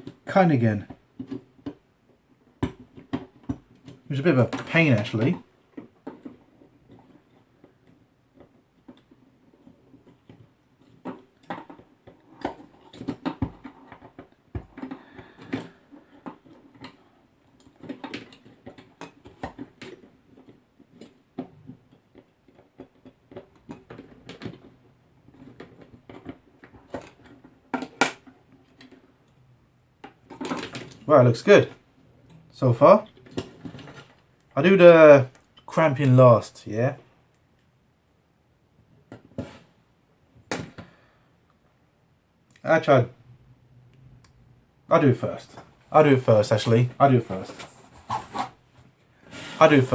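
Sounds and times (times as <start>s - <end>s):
cable and tools clicking and rustling: 0.0s - 34.6s, 45.2s - 49.9s.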